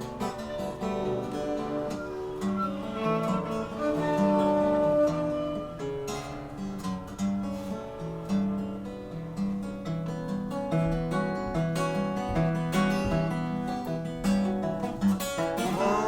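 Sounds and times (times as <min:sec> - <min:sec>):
acoustic guitar playing: 0:00.0 - 0:16.0.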